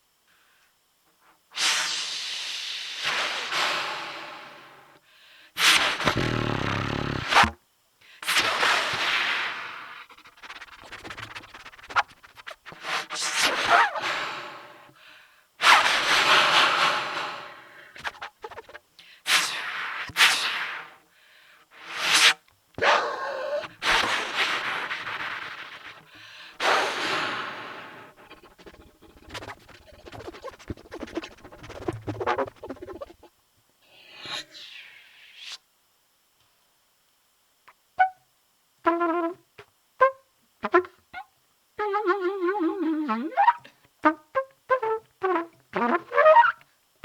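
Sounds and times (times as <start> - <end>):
breathy trumpet blasts: 5.6 - 7.6, 26.1 - 33.2, 41.8 - 46.6.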